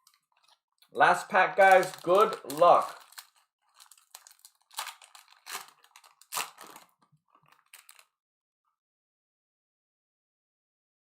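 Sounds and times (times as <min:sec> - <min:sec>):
foil wrapper tearing and crinkling: 0:01.6 - 0:08.1.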